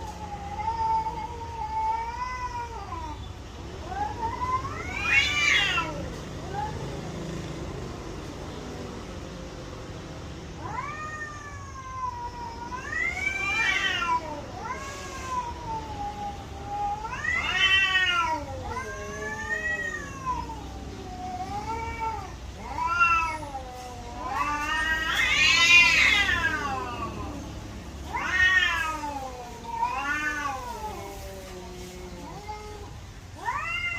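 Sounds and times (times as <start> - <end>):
cat meowing: 0.0 - 7.4, 10.6 - 33.9.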